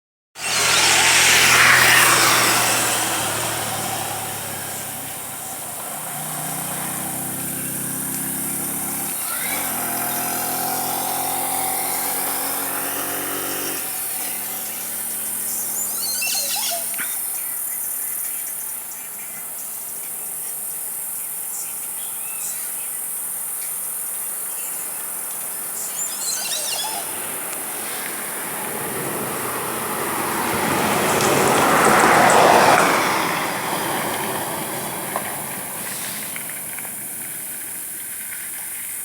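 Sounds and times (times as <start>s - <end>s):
vehicle engine running: 0.4s - 22.0s, 22.9s - 39.0s
high insect hiss: 0.4s - 39.0s
short bird calls: 8.2s - 10.2s, 13.6s - 19.8s, 25.7s - 27.4s.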